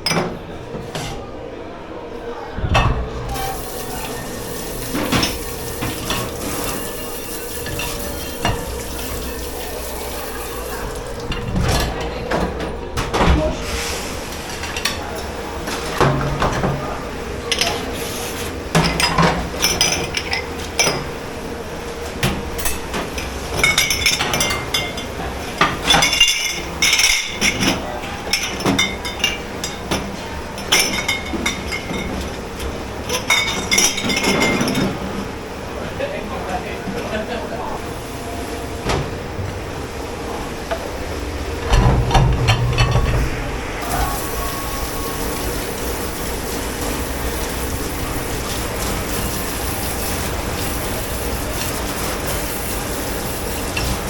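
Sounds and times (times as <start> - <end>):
steady hum: 0.0 - 18.8, 35.1 - 54.0
dishes and cutlery clattering: 2.8 - 13.3, 18.7 - 21.2, 22.6 - 32.4, 33.1 - 35.0.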